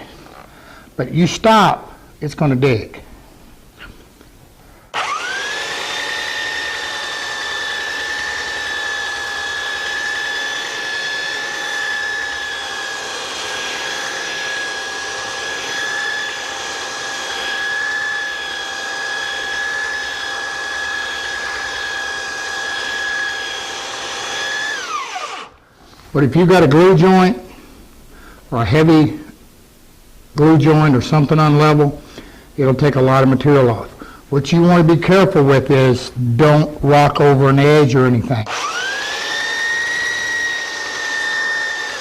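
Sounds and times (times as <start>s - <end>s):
belt sander running: 4.9s - 25.6s, 38.5s - 42.0s.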